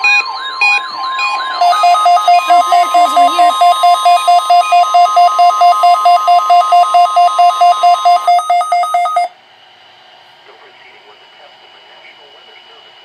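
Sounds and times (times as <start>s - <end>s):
fast pulsing two-pitch beeping: 0.0s - 9.3s
steady high alarm tone: 0.0s - 9.4s.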